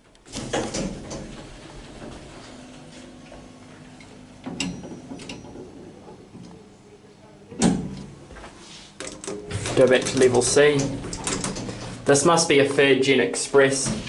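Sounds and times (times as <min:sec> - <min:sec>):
lift doors clunking and clicking: 0:00.0 - 0:06.6, 0:09.0 - 0:12.1
faint steady machinery hum: 0:00.0 - 0:14.0.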